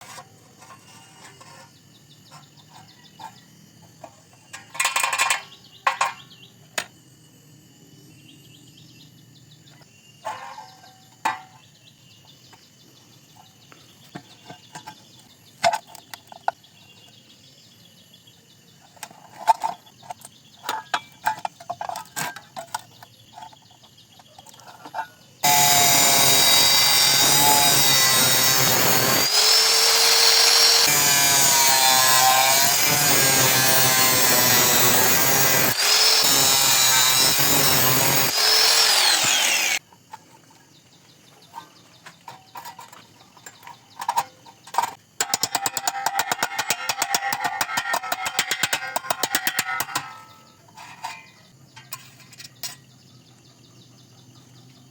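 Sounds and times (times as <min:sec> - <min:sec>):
power tool whining and rasping: 0:25.4 - 0:39.8, 0:45.2 - 0:50.4.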